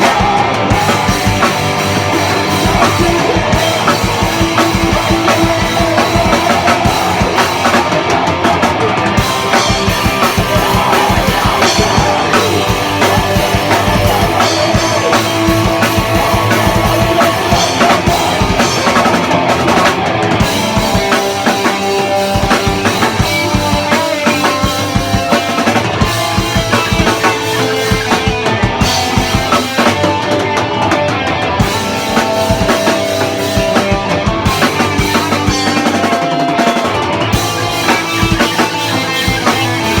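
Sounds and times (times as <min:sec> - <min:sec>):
rock music with drums and guitar: 0:00.0 - 0:40.0.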